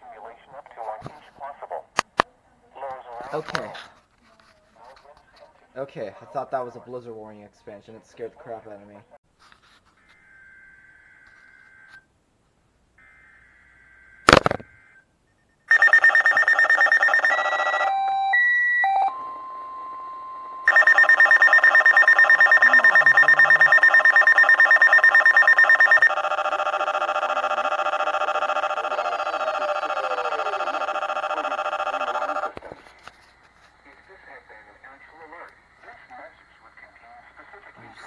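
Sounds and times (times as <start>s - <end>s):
pulsing alarm beep: 15.7s - 28.9s
electronic alarm tones switching pitch: 15.7s - 32.5s
steady single alert tone: 17.5s - 26.1s.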